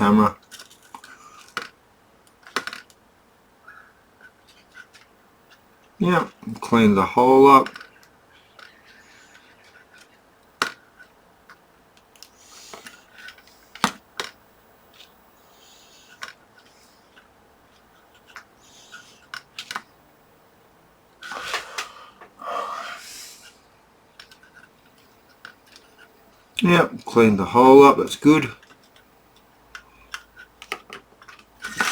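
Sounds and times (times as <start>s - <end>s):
desoldering hiss: 21.2s - 23.8s.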